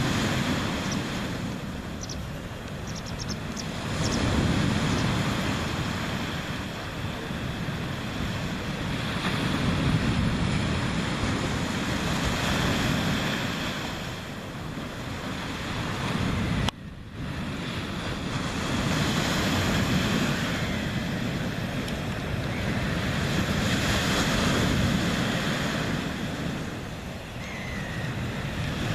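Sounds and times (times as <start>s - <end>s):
sea waves washing: 0.0s - 28.9s
wind buffeting microphone: 0.0s - 28.9s.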